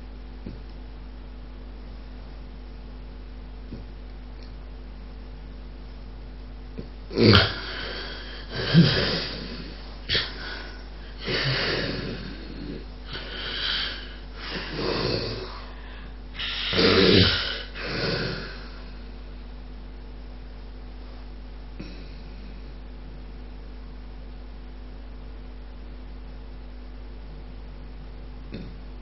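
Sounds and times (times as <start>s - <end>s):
loud snoring: 7.1s - 15.8s, 16.4s - 18.9s.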